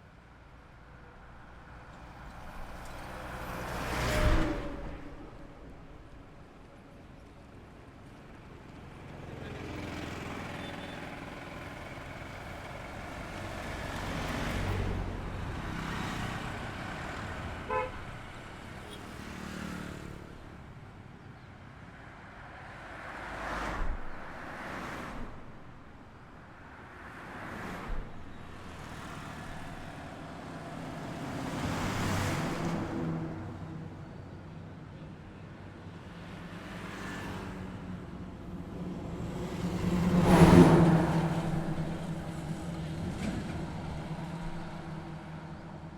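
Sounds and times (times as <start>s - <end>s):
vehicles passing on highway: 0.0s - 45.9s
car horn toot: 17.7s - 18.0s.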